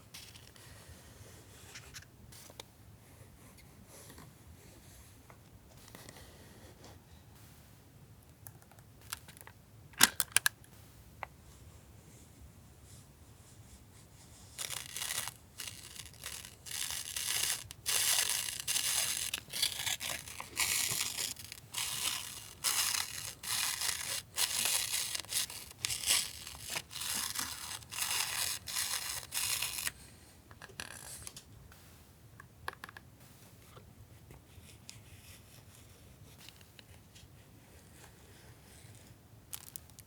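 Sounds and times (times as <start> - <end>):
packaging tearing and rustling: 14.5 - 30.0.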